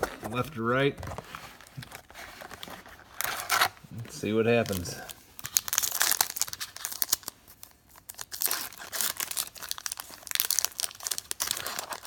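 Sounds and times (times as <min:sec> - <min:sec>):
card pack wrapper crinkling and tearing: 0:01.2 - 0:12.0.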